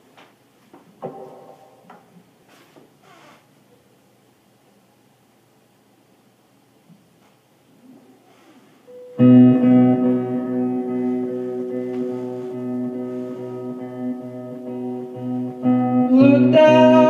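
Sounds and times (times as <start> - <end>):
held chord: 8.9 - 17.0.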